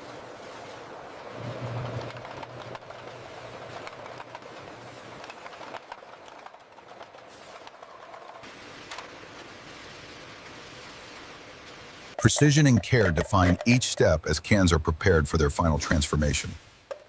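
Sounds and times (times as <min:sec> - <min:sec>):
machinery clicks and clatter: 0:01.2 - 0:09.5.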